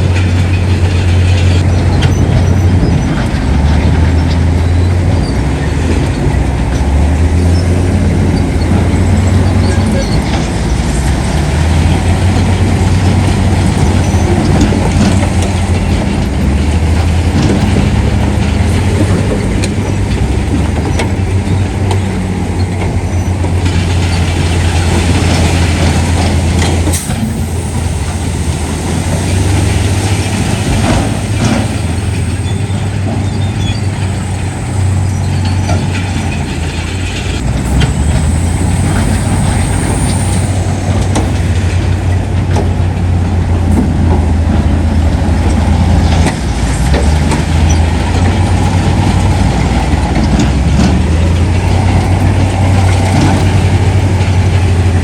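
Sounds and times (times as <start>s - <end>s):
diesel machinery engine drone: 0.0s - 55.0s.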